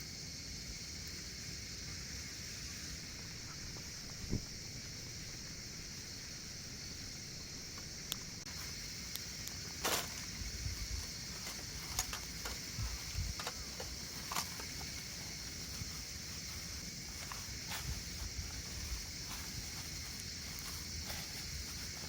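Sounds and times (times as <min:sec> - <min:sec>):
steady high hiss: 0:00.0 - 0:22.0
brief rustle: 0:09.2 - 0:15.8
small clicks and knocks: 0:11.4 - 0:14.9.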